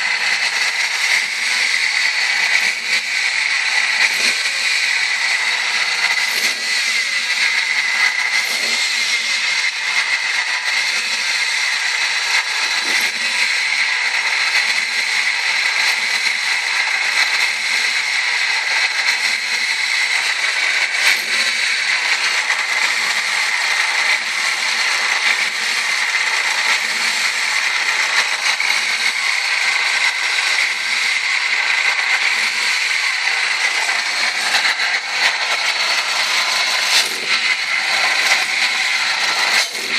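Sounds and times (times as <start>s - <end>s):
car engine running: 0.0s - 39.9s
steady high-pitched tone: 27.2s - 39.9s.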